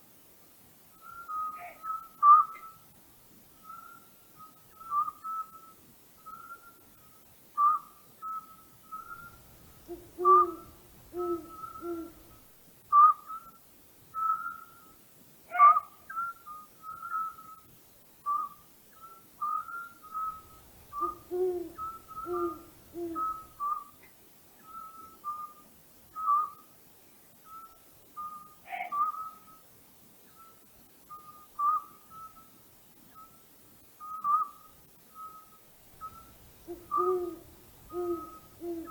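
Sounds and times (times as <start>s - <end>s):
high whistled bird calls: 1.0s - 2.8s, 3.6s - 13.6s, 14.2s - 24.0s, 24.6s - 25.6s, 26.2s - 26.7s, 27.4s - 29.7s, 30.3s - 33.4s, 34.0s - 38.9s
owl hooting: 1.0s - 2.8s, 4.7s - 6.8s, 7.6s - 13.6s, 14.2s - 17.6s, 18.3s - 24.0s, 27.5s - 29.6s, 31.2s - 32.5s, 34.0s - 38.9s.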